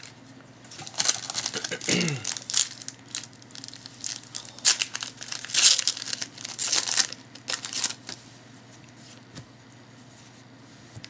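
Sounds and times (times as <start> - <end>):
plastic wrapper crinkling and tearing: 0.7 - 8.2.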